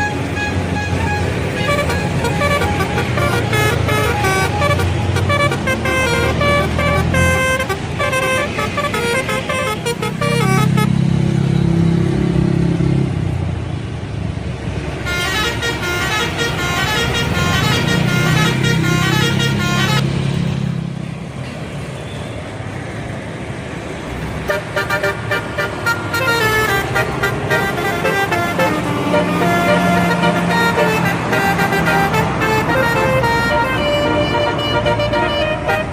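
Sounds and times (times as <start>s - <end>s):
bus horns playing melodies: 0.0s - 11.2s, 15.0s - 20.5s, 24.4s - 35.9s.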